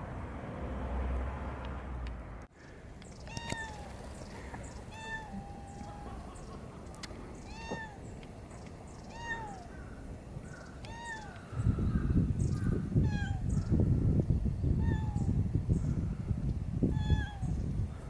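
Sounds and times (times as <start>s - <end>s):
cat meowing: 3.3s - 3.8s, 4.9s - 6.2s, 7.4s - 8.1s, 9.0s - 9.7s, 10.8s - 11.4s, 13.0s - 13.5s, 14.8s - 15.3s, 16.9s - 17.6s.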